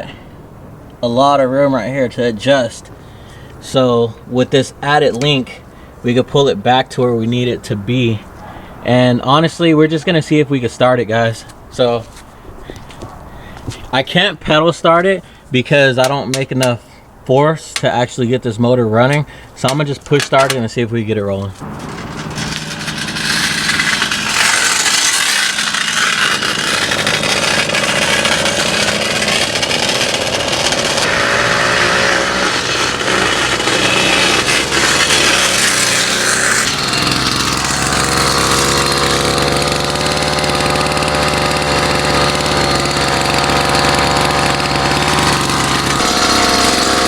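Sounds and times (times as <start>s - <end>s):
small two-stroke engine running: 21.6s - 47.0s.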